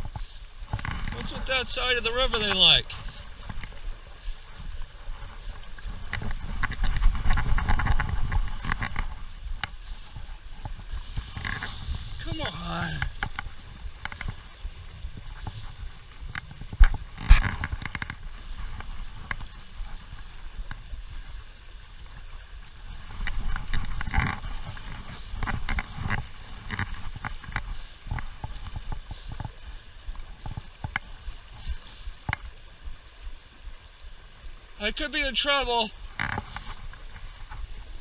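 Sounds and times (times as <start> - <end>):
river water rushing: 0.0 - 28.7.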